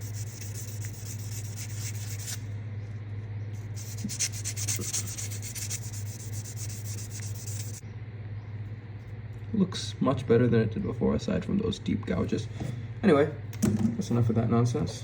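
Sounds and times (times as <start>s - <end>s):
abrasive scratching knife blade: 0.0s - 2.5s, 3.7s - 7.8s.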